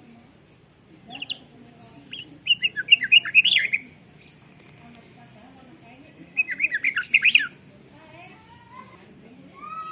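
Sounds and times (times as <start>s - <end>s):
bird singing whistled notes: 2.1s - 3.9s, 6.4s - 7.6s.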